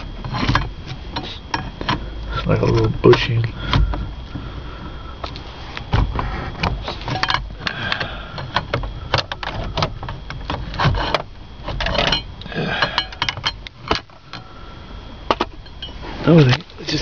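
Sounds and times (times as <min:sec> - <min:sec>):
clicks and clatter of small parts: 0:06.8 - 0:14.5.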